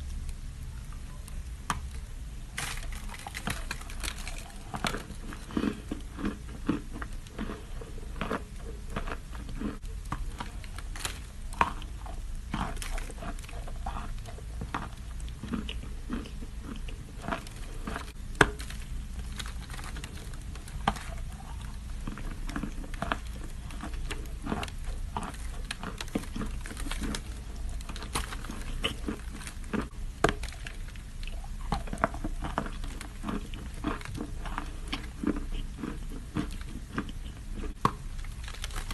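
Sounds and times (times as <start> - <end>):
chalk crunching while chewed: 2.6 - 38.9.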